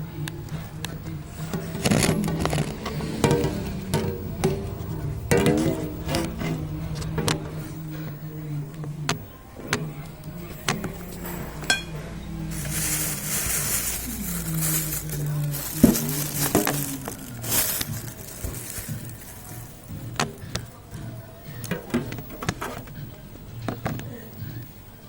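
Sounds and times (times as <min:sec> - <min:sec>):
cutlery clinking against a bowl: 0:11.0 - 0:12.0
hissy eating noise: 0:12.5 - 0:20.6.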